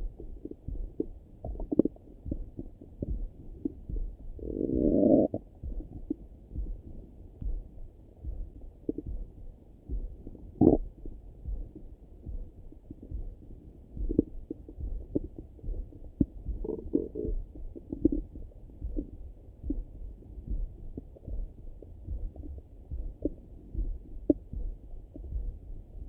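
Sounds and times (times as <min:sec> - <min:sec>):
stomach gurgles: 0:00.0 - 0:06.8, 0:10.2 - 0:11.8, 0:14.0 - 0:25.4
low rhythmic thudding: 0:00.0 - 0:26.0.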